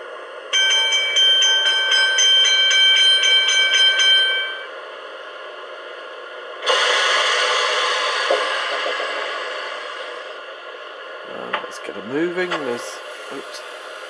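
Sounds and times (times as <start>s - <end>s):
rapid bell ringing: 0.5s - 4.7s
loud hiss: 6.6s - 10.4s.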